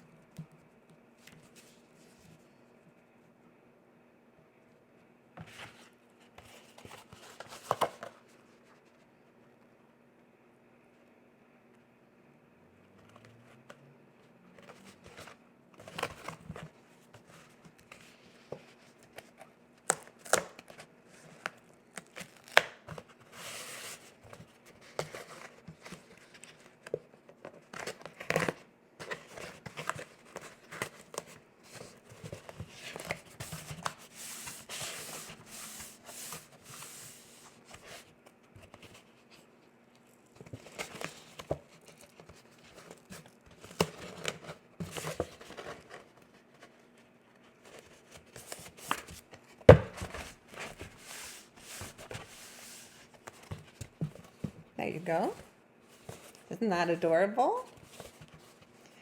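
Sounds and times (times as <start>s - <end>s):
paper rustling and crinkling: 5.4s - 9.1s, 14.6s - 54.6s, 57.6s - 59.0s.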